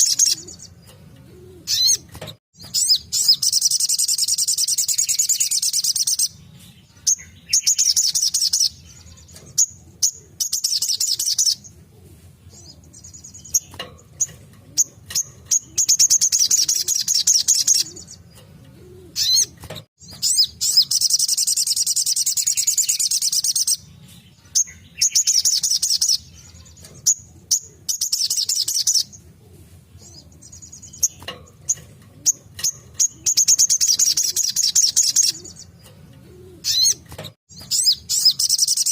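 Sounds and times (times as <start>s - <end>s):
bird singing fast trills: 0.0s - 0.9s, 1.5s - 11.8s, 12.6s - 18.4s, 19.1s - 29.2s, 30.0s - 38.9s.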